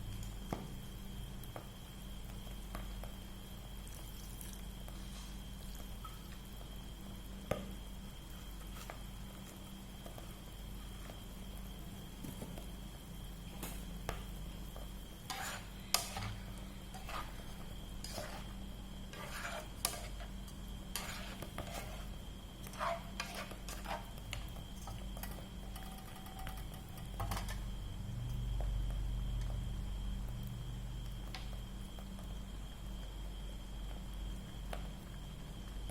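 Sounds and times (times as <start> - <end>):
faint steady high whine: 0.0 - 35.9
metal utensil stirring in a pan: 15.2 - 20.3, 20.9 - 22.1, 22.7 - 24.1
utensil clinking and scraping pan: 15.3 - 18.5, 20.9 - 22.0, 22.7 - 24.0.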